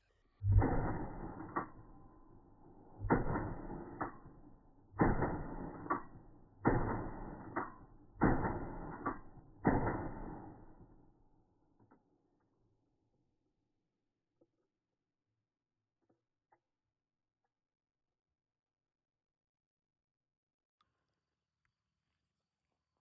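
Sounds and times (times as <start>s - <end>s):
sharp echo crack: 0.5s - 11.0s
shotgun shots: 3.0s - 10.8s.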